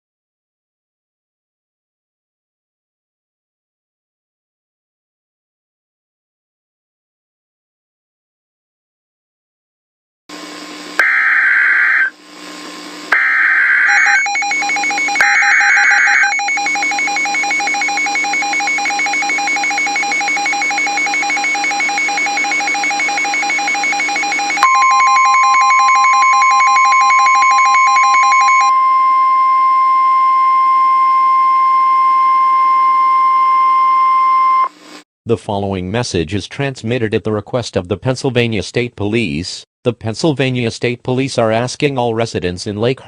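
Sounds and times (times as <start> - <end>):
steady single-pitch alert tone: 11.0 - 34.7.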